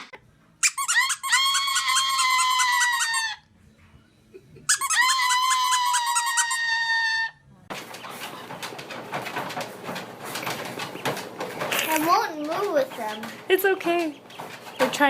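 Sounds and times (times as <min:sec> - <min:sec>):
high-pitched squeaks: 0:00.0 - 0:03.4, 0:04.7 - 0:08.5.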